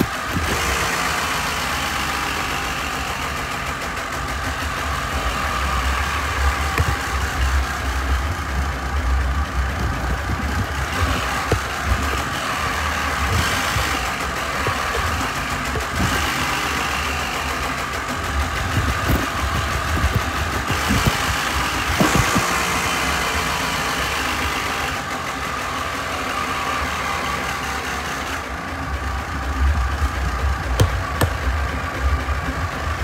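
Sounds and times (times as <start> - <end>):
tractor engine running: 0.0 - 33.0
sharp knocks and clunks: 6.7 - 7.4, 10.1 - 16.8, 18.5 - 23.1, 30.8 - 31.5.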